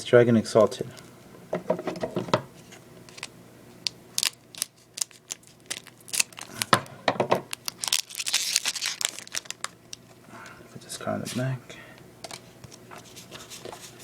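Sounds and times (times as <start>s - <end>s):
foil wrapper crinkling: 2.6s - 10.2s.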